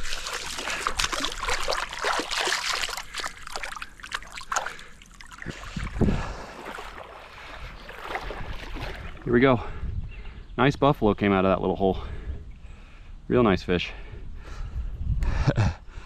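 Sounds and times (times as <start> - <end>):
creek water splashing: 0.0 - 9.7.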